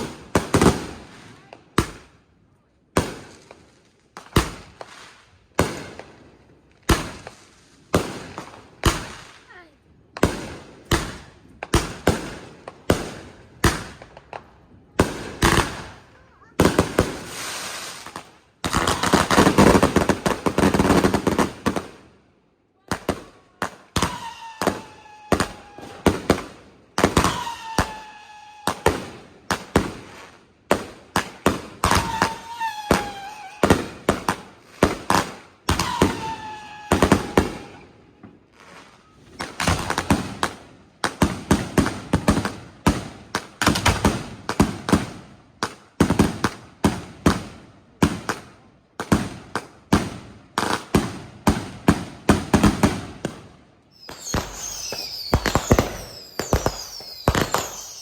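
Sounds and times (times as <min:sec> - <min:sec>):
fireworks banging: 0:06.8 - 0:22.0, 0:22.9 - 0:47.4, 0:49.0 - 0:58.0
falling firework whistles: 0:17.2 - 0:20.1, 0:24.0 - 0:29.2, 0:31.8 - 0:34.4, 0:35.7 - 0:40.0, 0:53.9 - 0:58.0.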